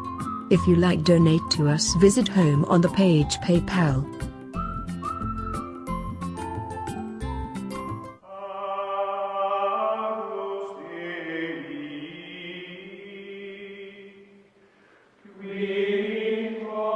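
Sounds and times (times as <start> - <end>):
choral chant music: 8.2 - 16.9.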